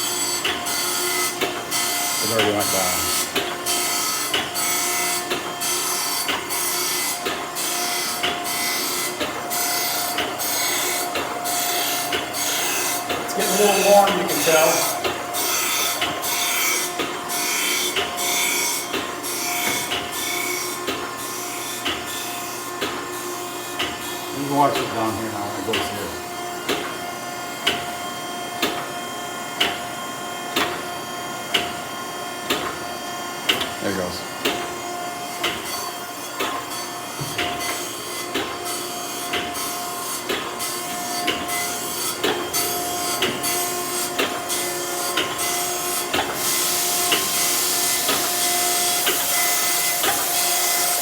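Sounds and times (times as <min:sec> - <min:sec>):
surface grinder hum: 0:10.5 - 0:18.8.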